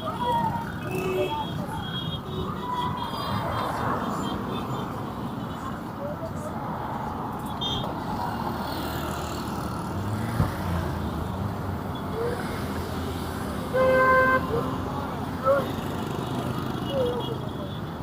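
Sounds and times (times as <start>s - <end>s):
street traffic noise: 0.0s - 18.0s
car horn honk: 13.7s - 14.6s.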